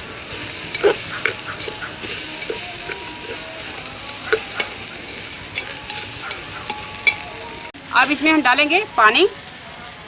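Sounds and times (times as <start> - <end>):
rice sizzling in oil: 0.0 - 10.0
spoon clinking against pot: 0.1 - 7.6.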